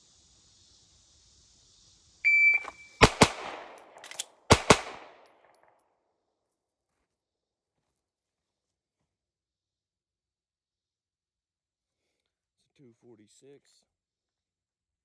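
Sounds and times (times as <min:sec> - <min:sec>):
shot timer beep: 0:02.3 - 0:03.0
pistol shots: 0:02.6 - 0:05.3.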